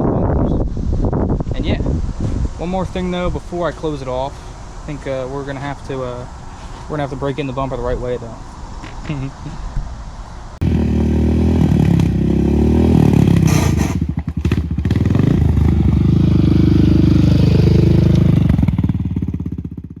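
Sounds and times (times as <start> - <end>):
quad engine running hard: 10.6 - 20.0.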